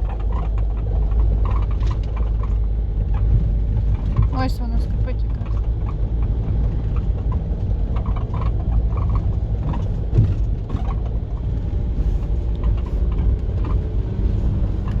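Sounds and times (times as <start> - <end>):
van body creaking squeaks: 0.0 - 4.3, 5.2 - 15.0
road noise: 0.0 - 15.0
van engine rumble: 0.0 - 15.0.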